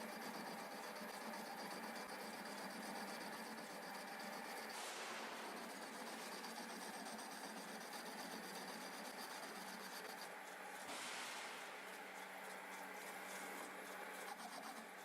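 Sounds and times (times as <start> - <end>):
lathe humming: 0.0 - 15.0
hiss of metal cutting: 4.7 - 6.6, 10.8 - 12.4.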